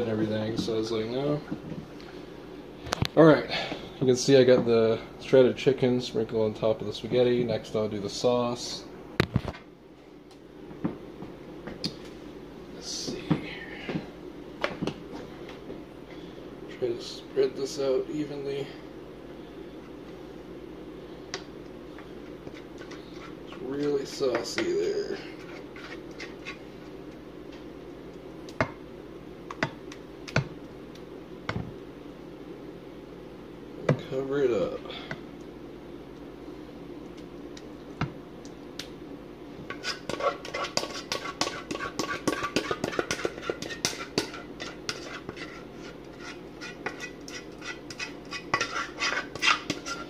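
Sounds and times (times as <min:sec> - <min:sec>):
low background hum: 0:00.0 - 0:50.0
utensil scraping a pan: 0:22.6 - 0:26.7, 0:39.7 - 0:50.0.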